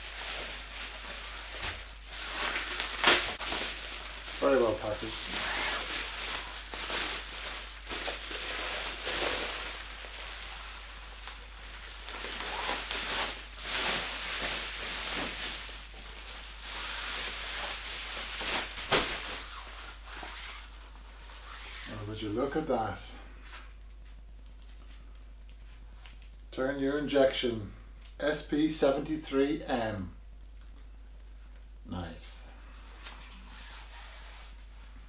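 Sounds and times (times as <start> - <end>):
plastic packaging crinkling: 0.0 - 21.9.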